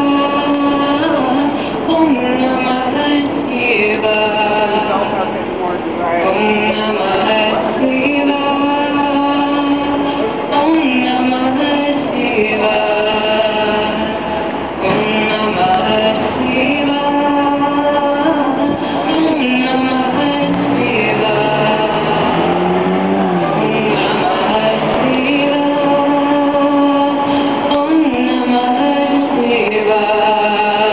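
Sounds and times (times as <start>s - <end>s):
street musician singing: 0.0s - 30.9s.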